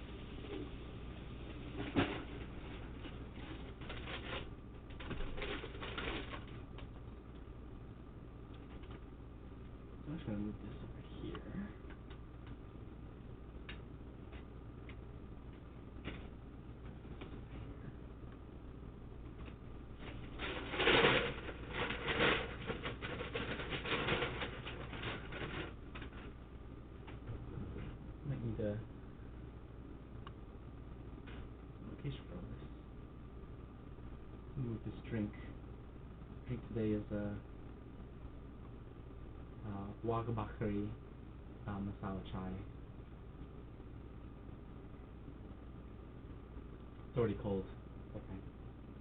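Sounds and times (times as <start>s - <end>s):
rustling: 0.0s - 7.0s, 19.3s - 28.0s
low electrical hum: 0.0s - 49.0s
scattered clicks and taps: 13.6s - 17.6s.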